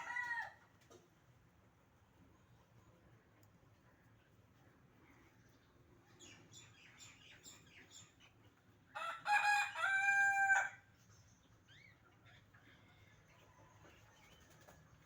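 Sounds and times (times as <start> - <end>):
rooster crowing: 9.0 - 10.8.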